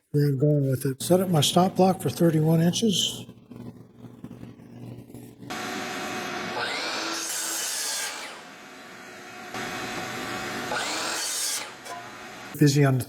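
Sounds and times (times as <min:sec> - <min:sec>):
power saw cutting wood: 0:05.5 - 0:12.6.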